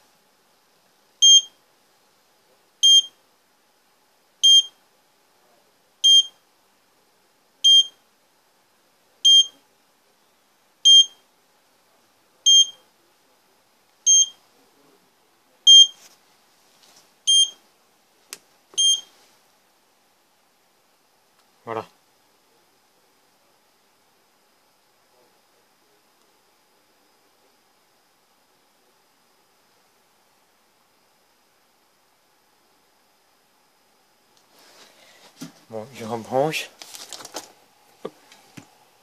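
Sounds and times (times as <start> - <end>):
short high alarm beeps: 14.1 - 14.4, 18.8 - 19.1.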